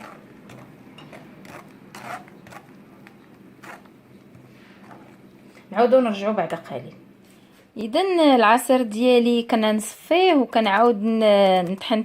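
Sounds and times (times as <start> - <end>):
pulp scraping against mesh strainer: 0.0 - 2.8, 3.6 - 5.2.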